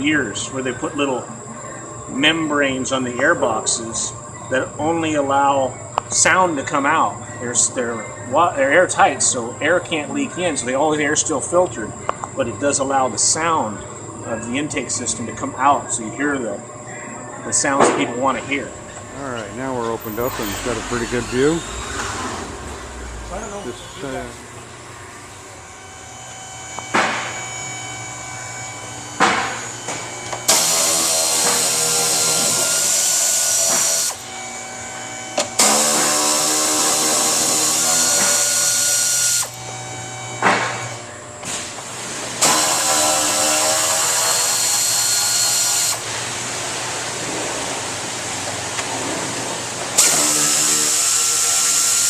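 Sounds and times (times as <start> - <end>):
power drill-driver running: 25.8 - 41.0, 42.4 - 46.1, 50.0 - 52.0.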